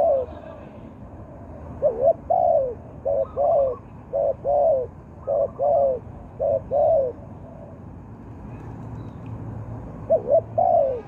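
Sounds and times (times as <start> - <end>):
dove cooing: 0.0 - 0.6, 1.8 - 7.8, 10.0 - 11.0
faint higher dove cooing: 0.0 - 0.8, 1.8 - 7.8, 10.0 - 11.0.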